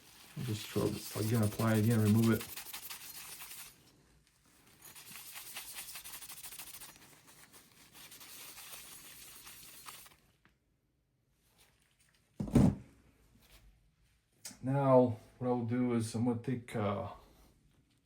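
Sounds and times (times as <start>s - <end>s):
paper towel rubbing: 0.0s - 3.8s, 4.6s - 10.2s.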